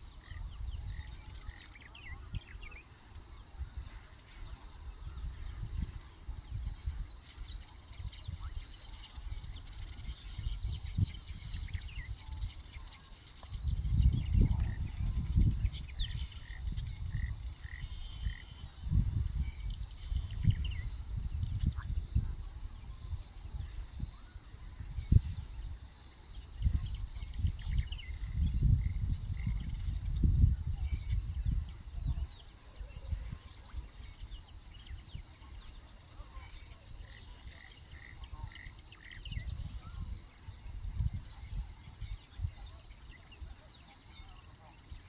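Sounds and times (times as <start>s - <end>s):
insect chorus trilling: 0.0s - 45.0s
low rumbles on microphone: 13.6s - 17.4s.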